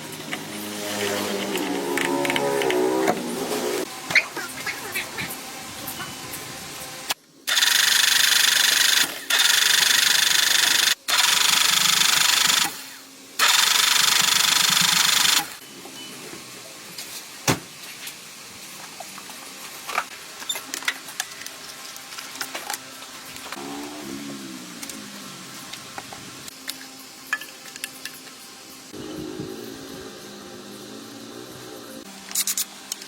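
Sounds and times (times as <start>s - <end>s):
power tool high hiss: 7.5s - 15.6s.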